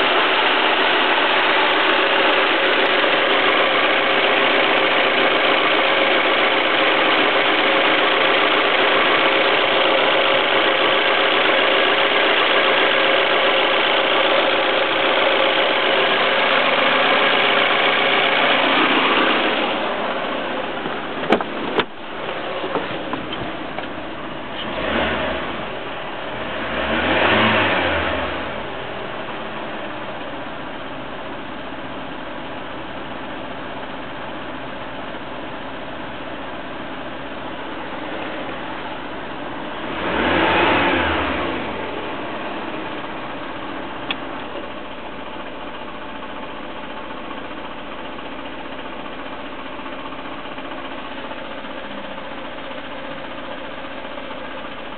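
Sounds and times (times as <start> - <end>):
engine revving: 0.0 - 20.8, 24.5 - 29.4, 39.6 - 43.6
car engine idling: 0.0 - 54.9.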